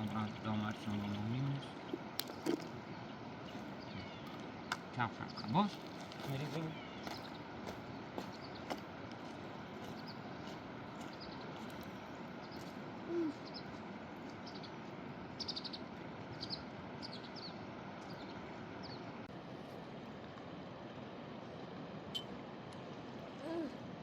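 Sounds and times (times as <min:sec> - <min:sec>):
small bird chirping: 0:00.0 - 0:08.8, 0:09.8 - 0:19.2.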